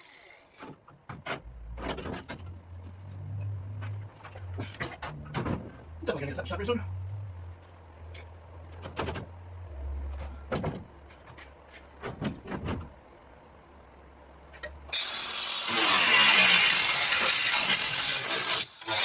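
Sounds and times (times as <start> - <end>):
metal knocks and clanks: 0.6 - 5.9, 10.1 - 13.0
loud motor-driven noise: 14.9 - 19.0.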